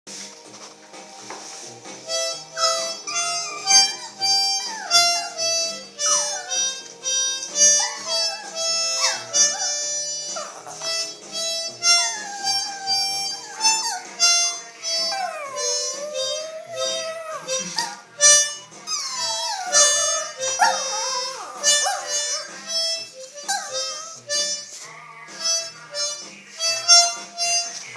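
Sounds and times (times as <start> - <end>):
harmonica chords: 0.1 - 27.9
dog howling: 2.6 - 11.1, 11.8 - 18.0, 18.9 - 24.2.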